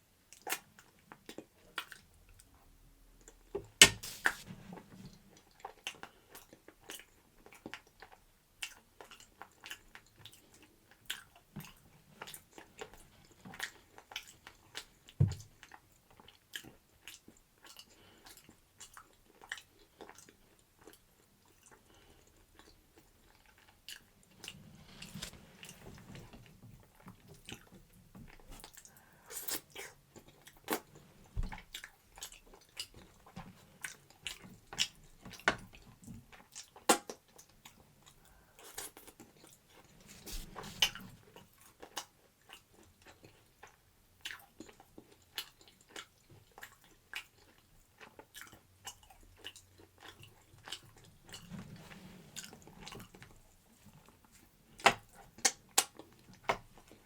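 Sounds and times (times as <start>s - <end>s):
heavy thump: 3.8s - 4.4s
person chewing food: 5.3s - 51.5s, 52.3s - 57.0s.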